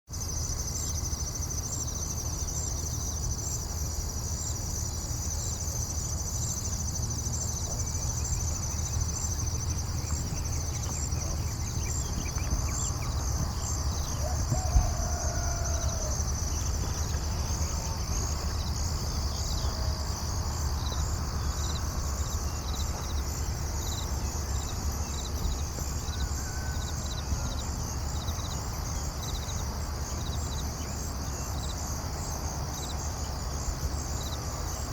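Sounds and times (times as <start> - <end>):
insects trilling: 0.1 - 34.9.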